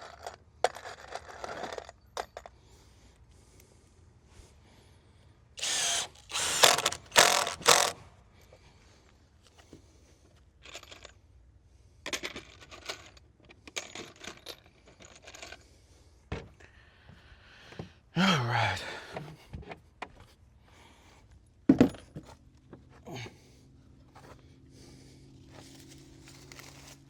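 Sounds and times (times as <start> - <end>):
power tool bursts on wood: 5.6 - 8.0.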